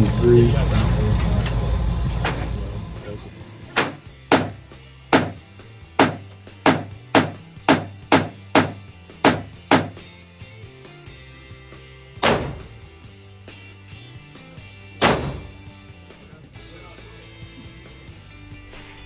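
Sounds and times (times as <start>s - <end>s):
pistol shots with echo: 3.8s - 4.6s, 5.2s - 5.4s, 6.0s - 10.0s.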